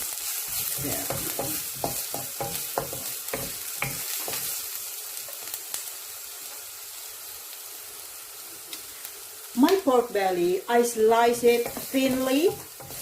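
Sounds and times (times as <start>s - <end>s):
onions sizzling in oil: 0.0s - 13.0s
utensil scraping a pan: 11.4s - 13.0s.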